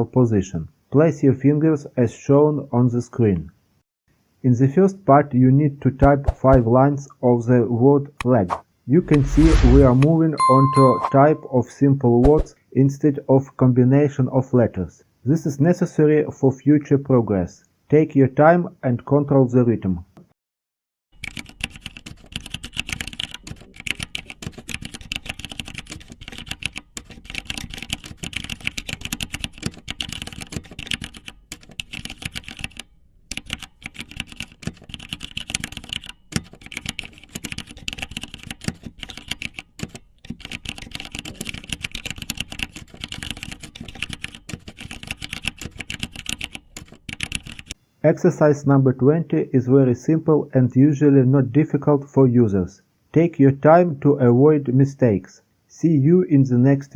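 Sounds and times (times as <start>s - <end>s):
typing on a keyboard: 21.2s - 47.8s.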